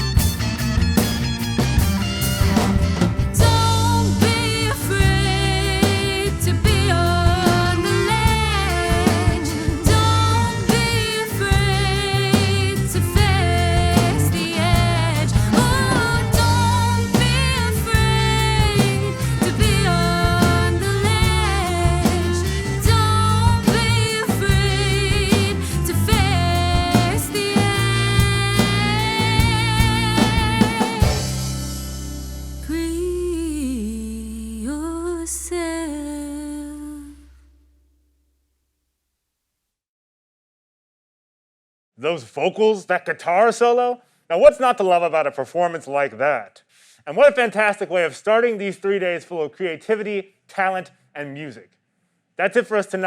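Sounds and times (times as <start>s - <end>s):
band playing song: 0.0s - 33.4s
strummed guitar chords: 0.0s - 37.1s
person singing with vibrato: 3.4s - 31.5s, 32.6s - 37.5s.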